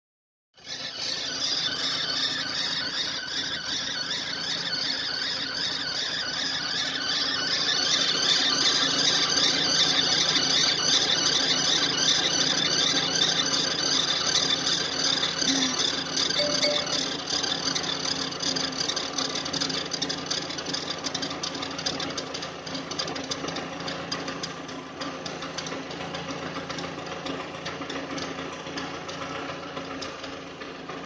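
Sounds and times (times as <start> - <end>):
fast high-pitched squeak: 15.4 - 17.2.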